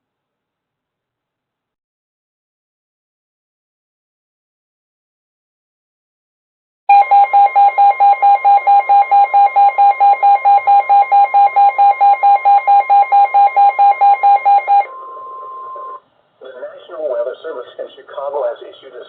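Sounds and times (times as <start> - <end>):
rapid beeping alarm: 6.9 - 16.0
steady warning alarm tone: 6.9 - 16.0.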